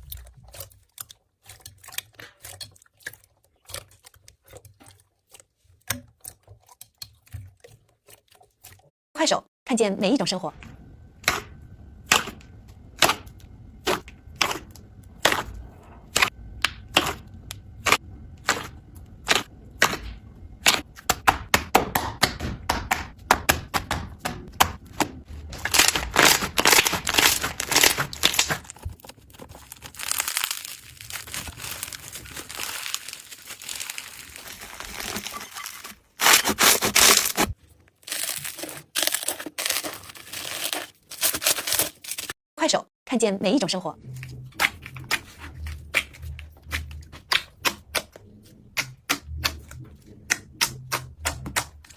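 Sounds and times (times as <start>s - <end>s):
slime crackling and crunching: 25.4s - 42.4s.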